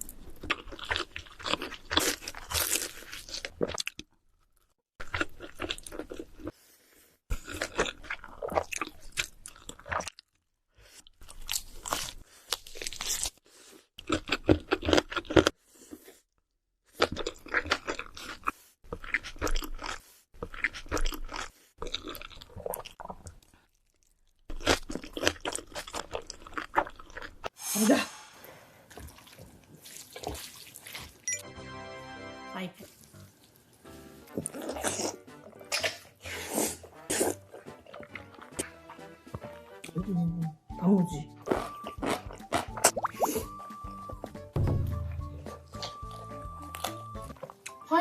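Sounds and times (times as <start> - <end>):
crunching crisp food: 0.1 - 4.1, 11.2 - 16.0.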